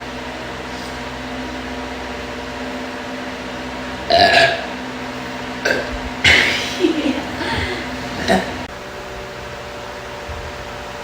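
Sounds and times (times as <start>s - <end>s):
steady background hum: 0.0s - 11.0s
girl burping: 4.1s - 4.7s, 5.6s - 8.7s.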